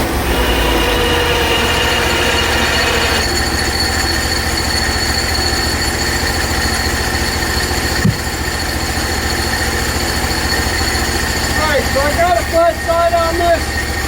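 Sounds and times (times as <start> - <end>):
saw blade whine: 0.0 - 14.0
sawmill engine drumming: 0.0 - 14.0
brief knock: 8.0 - 8.4.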